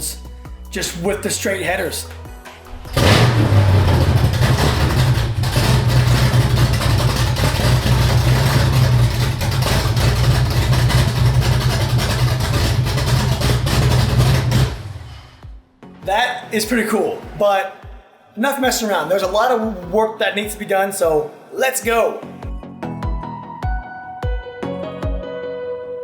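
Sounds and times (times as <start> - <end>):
loud unmuffled car engine running: 2.7 - 15.4.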